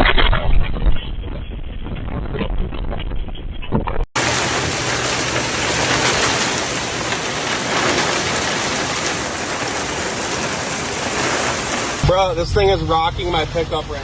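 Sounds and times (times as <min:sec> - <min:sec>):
muffled low wind rumble: 0:00.2 - 0:14.0
heavy rain hissing: 0:04.2 - 0:14.0.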